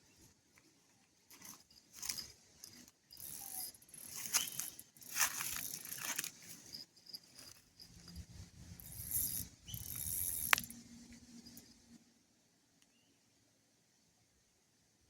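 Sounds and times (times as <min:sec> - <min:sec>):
fishing reel clicking and whirring: 0:01.4 - 0:10.8
sharp click: 0:09.2 - 0:10.8.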